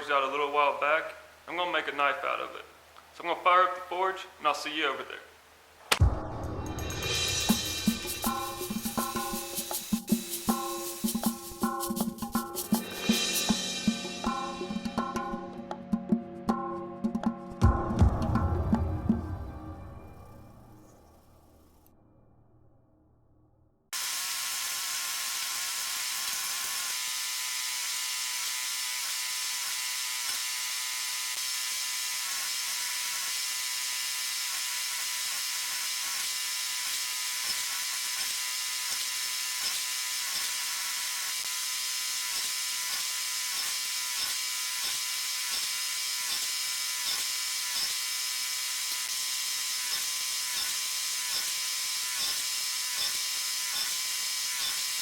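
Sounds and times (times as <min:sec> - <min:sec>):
forge hissing and humming: 0:34.4 - 0:41.6, 0:42.2 - 0:55.0.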